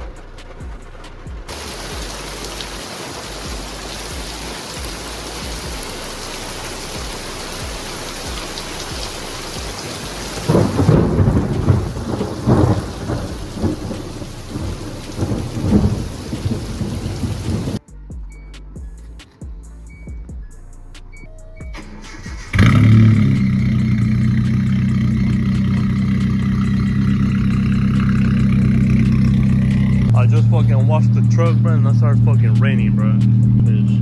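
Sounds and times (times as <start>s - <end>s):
steady rain: 0.0s - 17.8s, 22.4s - 30.8s
thunder rumbling: 0.0s - 17.8s, 22.5s - 34.0s.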